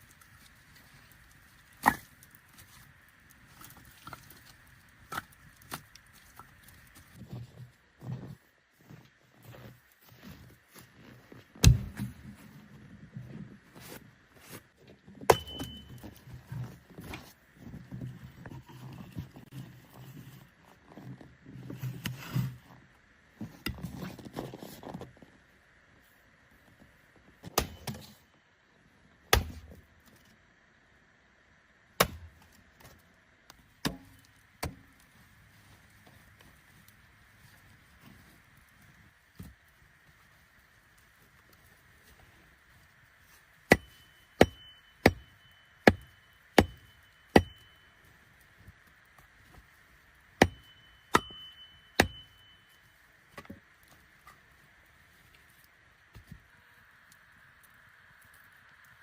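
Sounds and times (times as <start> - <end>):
wood being chopped: 1.8 - 2.2, 11.6 - 12.2, 15.2 - 16.0, 27.4 - 28.0, 29.3 - 29.7, 32.0 - 32.4, 33.8 - 34.9, 43.7 - 47.6, 50.4 - 52.3
faint steady hiss: 21.6 - 59.0.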